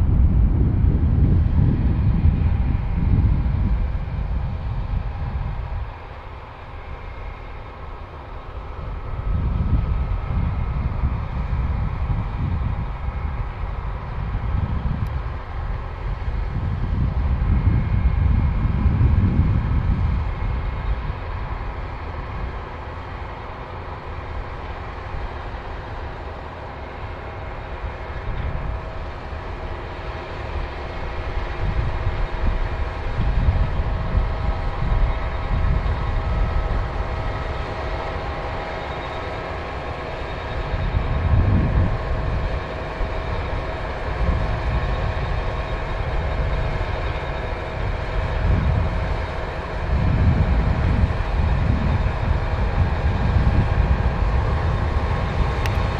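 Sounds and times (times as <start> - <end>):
low rumble: 0.0 - 5.9
combine harvester running: 0.0 - 55.9.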